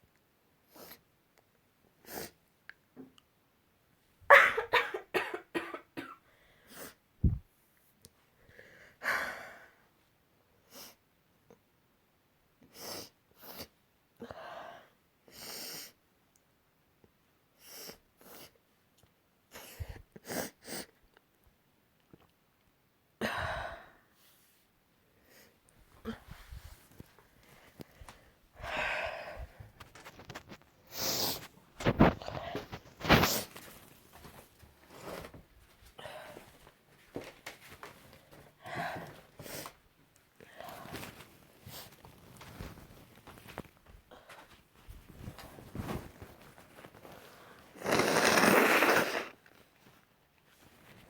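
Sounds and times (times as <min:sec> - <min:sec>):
person sneezing: 0:04.3 - 0:05.7
sniffs and breaths: 0:23.4 - 0:39.8, 0:40.4 - 0:49.4.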